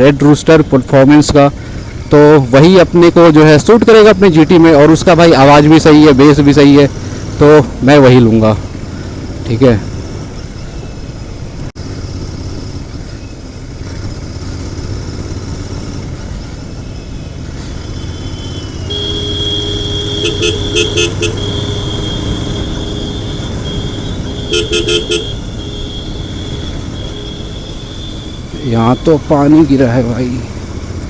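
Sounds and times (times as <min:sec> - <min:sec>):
road and wind noise: 0:00.0 - 0:31.0
motorcycle engine running: 0:11.3 - 0:31.0
vehicle horn honking: 0:17.9 - 0:29.1.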